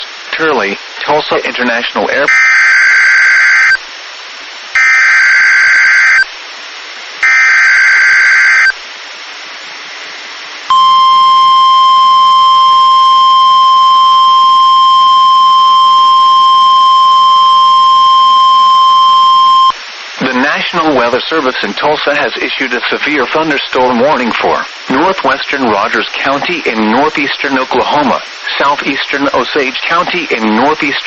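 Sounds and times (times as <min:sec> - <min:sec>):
steady alarm tone: 0:02.3 - 0:03.8, 0:04.8 - 0:06.3, 0:07.2 - 0:08.8, 0:10.7 - 0:19.8
screeching data bursts: 0:04.8 - 0:06.3, 0:07.2 - 0:08.8, 0:10.7 - 0:19.8.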